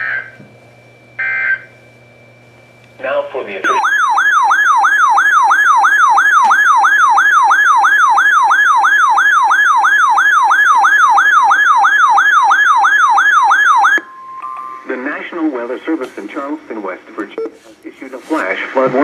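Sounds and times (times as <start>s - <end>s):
electronic alert siren yelping: 0.0s - 0.4s, 1.2s - 1.7s, 3.6s - 14.1s.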